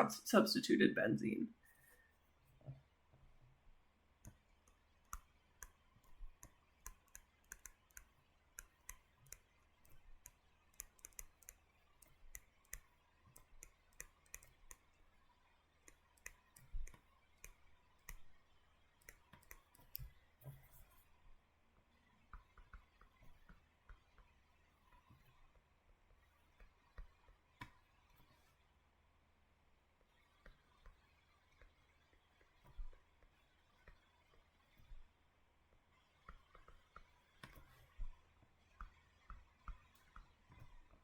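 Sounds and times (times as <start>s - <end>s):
stylus tapping on tablet screen: 4.2s - 14.9s, 15.8s - 18.3s, 19.0s - 20.7s, 22.3s - 25.1s, 36.2s - 41.0s.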